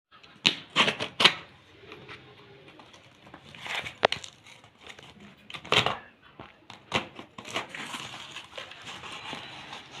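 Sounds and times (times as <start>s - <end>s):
packaging rustling: 2.7s - 6.0s, 6.8s - 10.0s.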